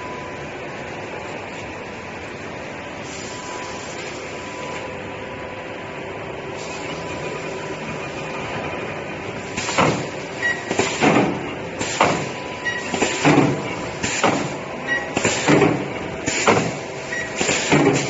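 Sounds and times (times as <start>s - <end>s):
welding machine running: 6.6s - 18.0s.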